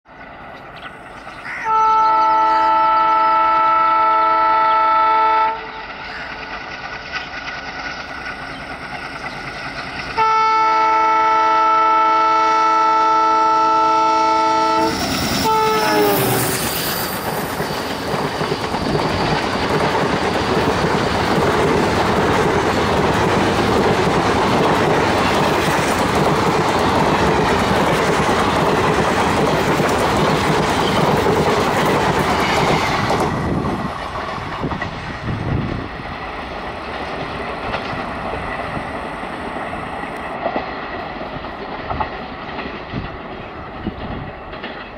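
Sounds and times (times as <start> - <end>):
locomotive horn blasts: 1.6 - 5.8, 10.2 - 16.5
train wheels clattering past: 5.1 - 11.7, 14.5 - 44.9.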